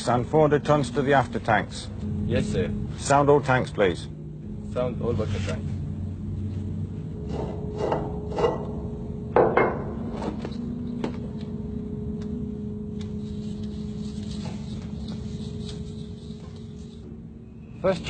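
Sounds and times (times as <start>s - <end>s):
machinery hum: 0.0s - 18.0s
sharp knocks and clanks: 7.2s - 11.2s.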